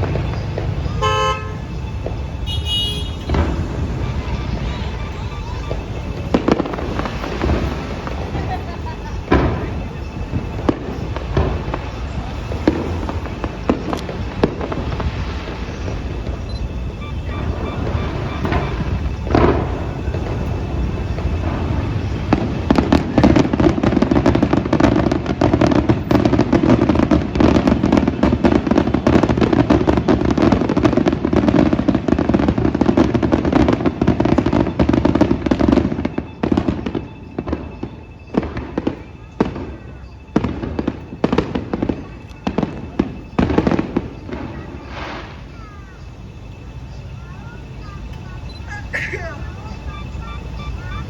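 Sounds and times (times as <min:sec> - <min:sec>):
fireworks bangs and crackles: 0:00.0 - 0:51.0.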